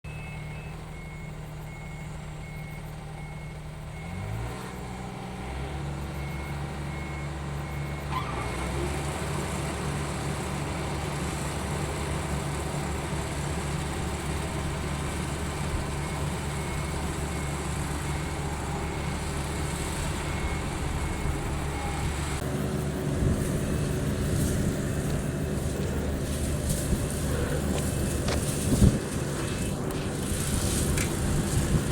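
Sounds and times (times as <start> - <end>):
faint high-pitched beeping: 0.1 - 4.4, 5.8 - 8.1, 15.3 - 22.4
combine harvester engine running: 0.1 - 31.9.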